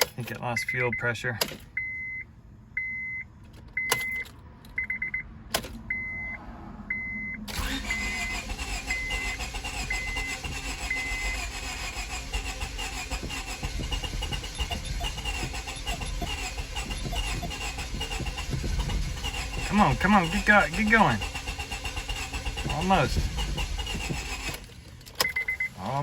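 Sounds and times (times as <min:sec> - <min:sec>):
dashboard warning chime beeping: 0:00.0 - 0:05.3, 0:05.9 - 0:24.5, 0:25.2 - 0:26.0
ignition key clicks: 0:03.4 - 0:05.8
starter cranking engine: 0:07.5 - 0:26.0.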